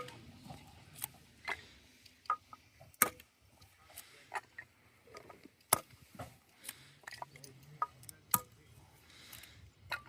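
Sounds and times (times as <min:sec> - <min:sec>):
axe splitting firewood: 0:02.9 - 0:03.3, 0:05.7 - 0:06.3.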